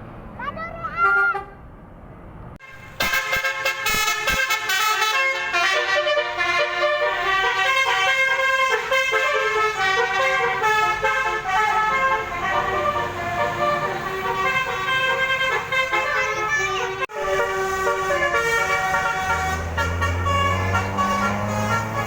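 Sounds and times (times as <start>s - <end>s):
multi-trumpet horn playing a tune: 2.6s - 22.0s.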